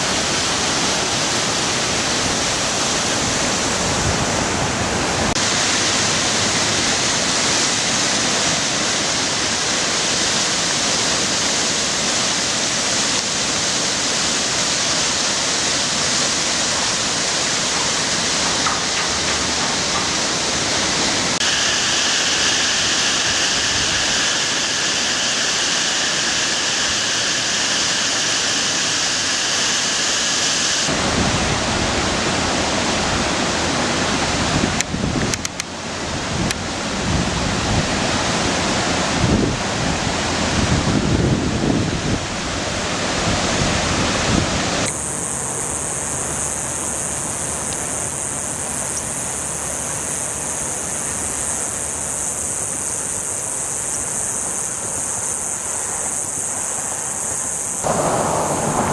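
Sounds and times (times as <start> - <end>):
rushing floodwater: 0.0 - 57.1, 57.8 - 58.9
low rumble: 57.8 - 58.9.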